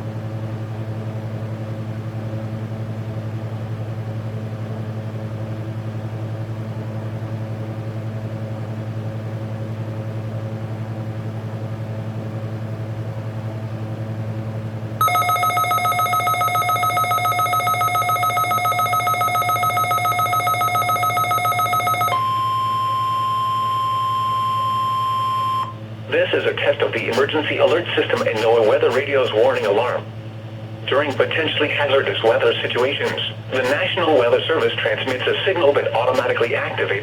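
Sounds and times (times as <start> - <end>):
steady low hum: 13.4 - 37.0
steady single alarm tone: 15.0 - 25.9
warbling electronic alert tone: 32.1 - 36.8.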